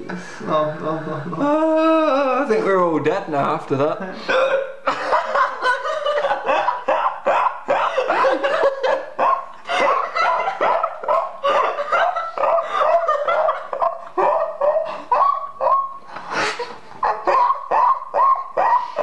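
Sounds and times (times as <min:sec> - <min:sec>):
man hiccuping: 0:04.3 - 0:04.8
man laughing in high-pitched bursts: 0:04.6 - 0:19.0.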